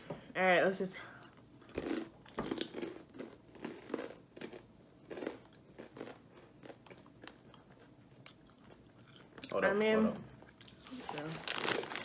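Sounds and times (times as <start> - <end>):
chips crunching while chewed: 1.7 - 9.6, 10.6 - 12.0.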